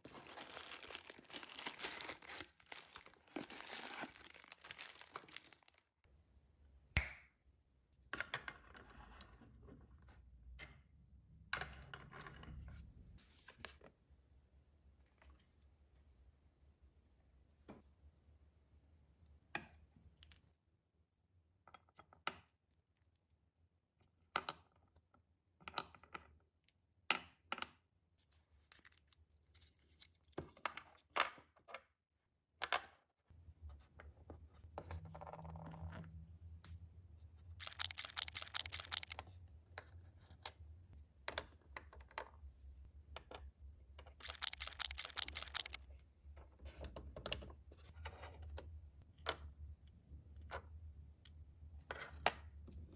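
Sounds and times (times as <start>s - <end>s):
fast plastic rattling: 37.6s - 39.2s, 44.2s - 45.8s
plastic pieces clicking and tapping: 37.6s - 39.2s, 44.2s - 45.8s.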